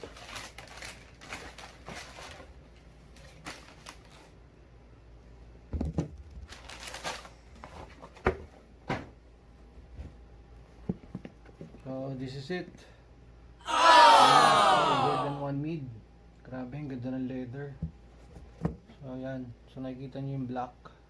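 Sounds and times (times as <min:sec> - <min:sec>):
wrapping paper rustling: 0:00.0 - 0:02.5, 0:06.5 - 0:07.3.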